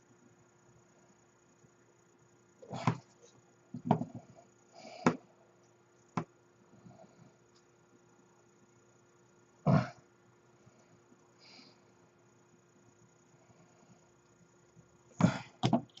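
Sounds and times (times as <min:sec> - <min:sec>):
faint steady hum: 0:00.0 - 0:16.0
plastic parts knocking and clicking: 0:03.8 - 0:04.3, 0:15.6 - 0:16.0.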